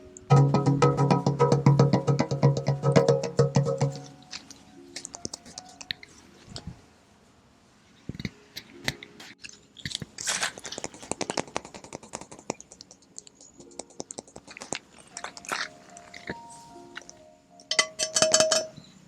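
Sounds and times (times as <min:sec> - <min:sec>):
fingers tapping on metal: 0:00.2 - 0:06.1, 0:10.7 - 0:18.9.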